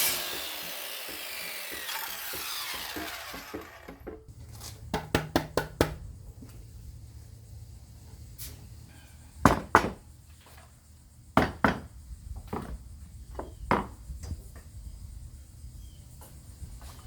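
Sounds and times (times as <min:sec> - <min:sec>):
knocks of boards and tools on workbench: 0:00.0 - 0:06.0, 0:09.4 - 0:10.0, 0:11.4 - 0:14.4.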